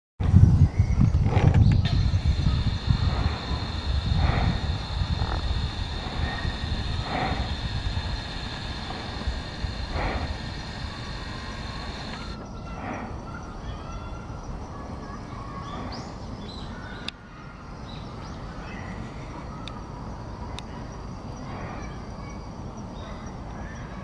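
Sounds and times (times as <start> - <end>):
steady low rumble: 0.2 - 12.5
birds calling and chirping: 0.4 - 19.8.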